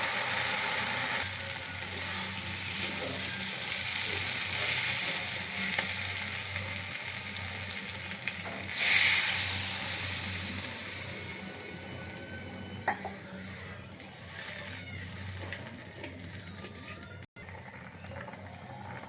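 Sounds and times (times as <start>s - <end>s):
food sizzling in hot oil: 0.0s - 11.9s.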